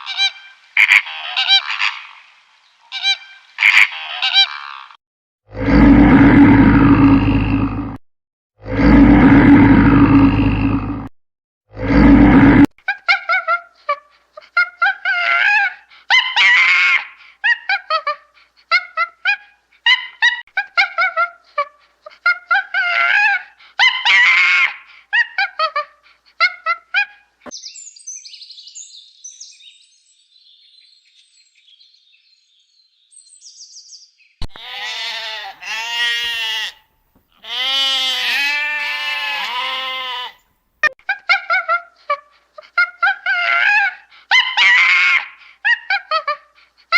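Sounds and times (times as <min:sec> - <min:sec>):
long wavering bleat-like calls: 0:34.5 - 0:40.4
short pitched animal calls: 0:34.5 - 0:40.4.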